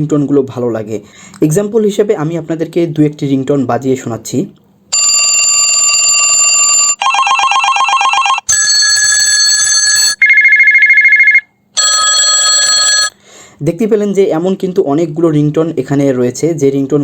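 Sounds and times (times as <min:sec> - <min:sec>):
old telephone ringing: 0:04.9 - 0:13.2.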